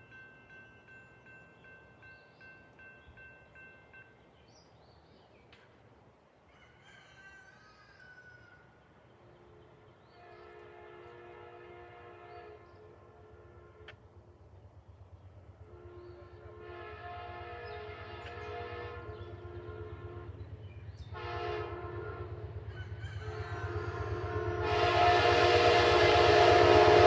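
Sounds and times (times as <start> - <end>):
crossing bell dinging: 0.0 - 4.3
distant train horn: 9.3 - 14.5, 15.5 - 27.0.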